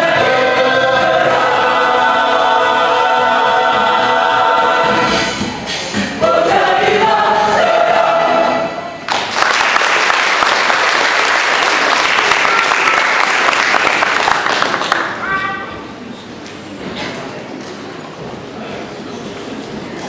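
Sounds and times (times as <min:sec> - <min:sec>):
choir singing a chord: 0:00.0 - 0:05.5, 0:06.2 - 0:09.1
audience applause: 0:09.1 - 0:15.2.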